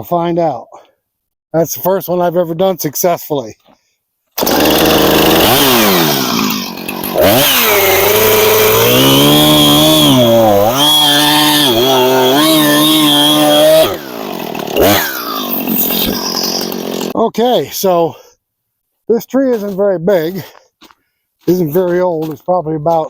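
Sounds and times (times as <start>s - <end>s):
chainsaw cutting wood: 4.4s - 17.2s.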